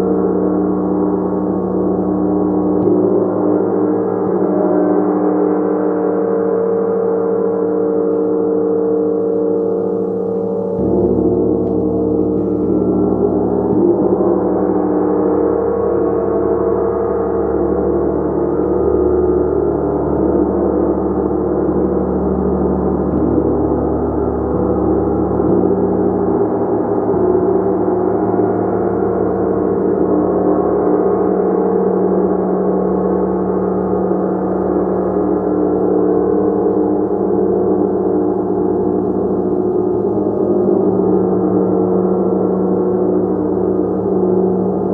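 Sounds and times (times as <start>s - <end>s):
gong ringing: 9.7s - 30.2s.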